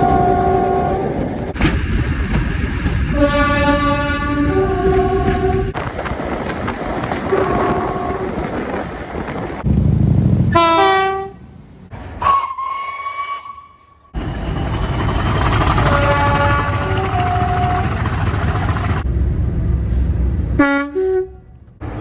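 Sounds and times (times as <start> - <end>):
train whistle: 0.0 - 1.1, 3.2 - 5.6, 12.2 - 14.0, 15.8 - 18.0, 20.6 - 21.4
train rumble: 0.0 - 13.1, 13.8 - 22.0
train horn chord: 3.2 - 5.6, 10.5 - 11.4, 15.8 - 18.0.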